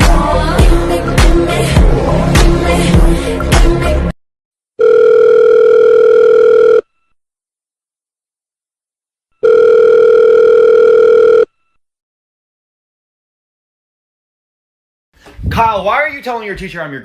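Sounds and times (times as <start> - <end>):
music: 0.0 - 4.2
telephone ringback tone: 4.8 - 7.2, 9.4 - 11.8.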